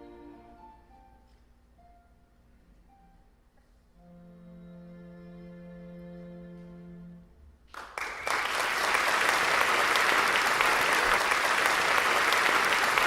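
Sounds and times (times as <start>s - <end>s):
audience applauding: 7.8s - 13.0s.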